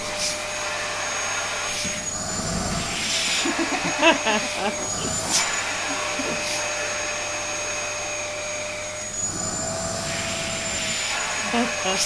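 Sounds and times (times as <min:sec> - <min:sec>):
vacuum cleaner running: 0:00.0 - 0:12.0.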